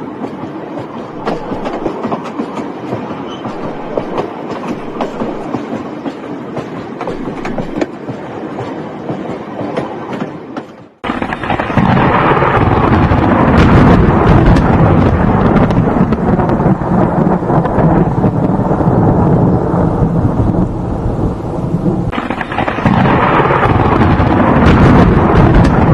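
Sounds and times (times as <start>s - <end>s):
train rattling clatter: 0.0s - 18.8s, 22.1s - 25.9s
loud dense rumbling: 11.0s - 25.9s.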